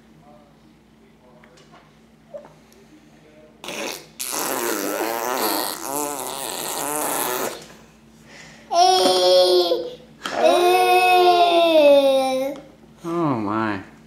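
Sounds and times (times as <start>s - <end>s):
baby straining noise: 3.6s - 7.6s.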